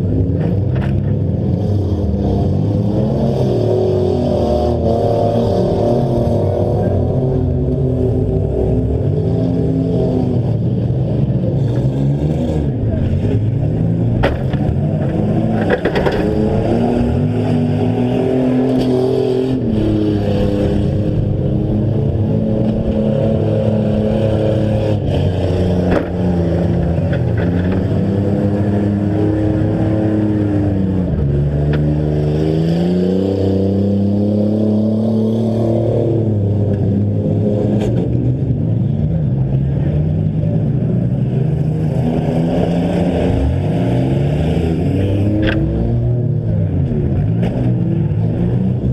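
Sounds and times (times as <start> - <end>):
car engines revving: 0.0 - 48.9.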